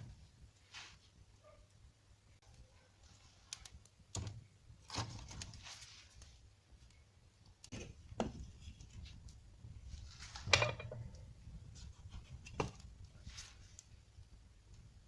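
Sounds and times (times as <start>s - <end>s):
knocks and clanks on fireplace: 4.1s - 5.6s, 7.6s - 13.3s.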